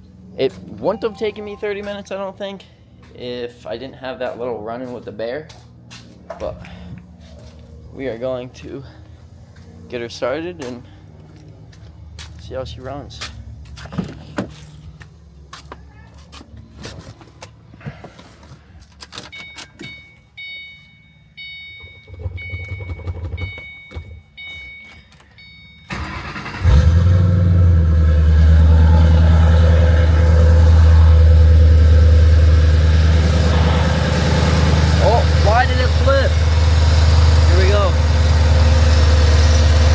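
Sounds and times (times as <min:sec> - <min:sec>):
car warning chime: 0:00.8 - 0:02.4, 0:19.3 - 0:26.6
car engine idling: 0:25.9 - 0:39.9.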